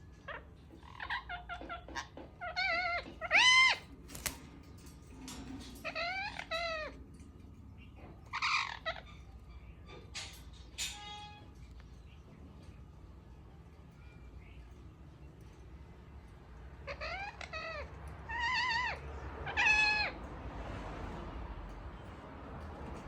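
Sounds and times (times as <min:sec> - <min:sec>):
parakeet chirps and warbling calls: 0:00.0 - 0:04.7, 0:05.3 - 0:20.2.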